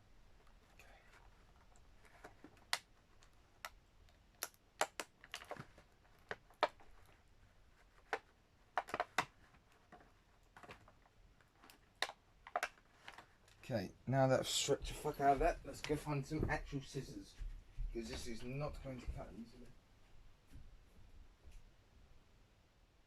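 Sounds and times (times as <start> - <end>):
plastic packaging clicks and taps: 2.1 - 7.2, 8.0 - 13.6.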